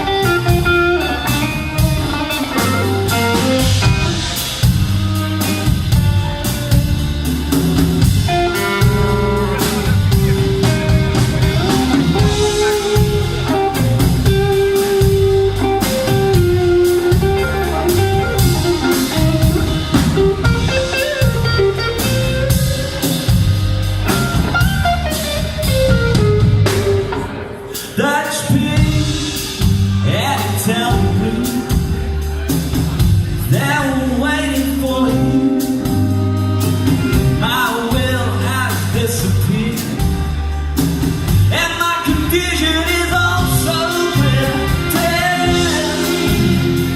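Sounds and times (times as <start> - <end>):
live blues band playing: 0.0 - 46.9
person singing: 8.3 - 23.0, 26.7 - 40.5, 41.4 - 46.9.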